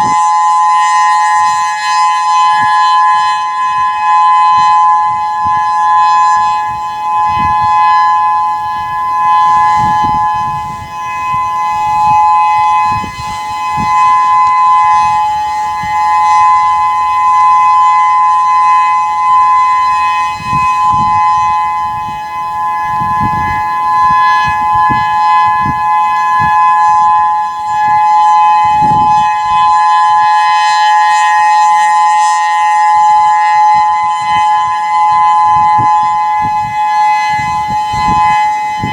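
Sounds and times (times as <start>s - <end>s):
outdoor warning siren two-note tone: 0.0s - 38.9s.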